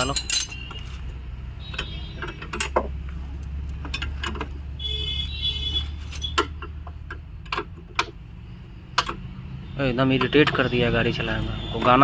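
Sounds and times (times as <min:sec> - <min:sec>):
metal tools clinking: 0:00.0 - 0:01.1.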